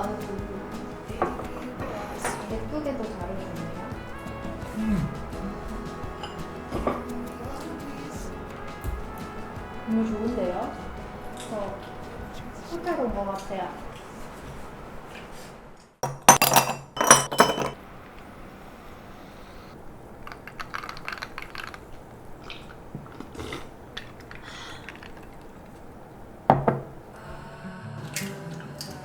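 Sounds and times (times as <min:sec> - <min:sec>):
cutlery clinking against plate: 0:16.0 - 0:17.8.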